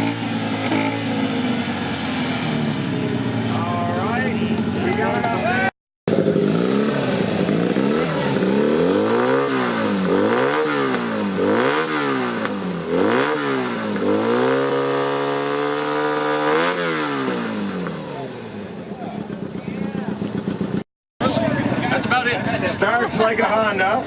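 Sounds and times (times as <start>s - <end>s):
motorcycle engine revving: 0.0s - 24.0s.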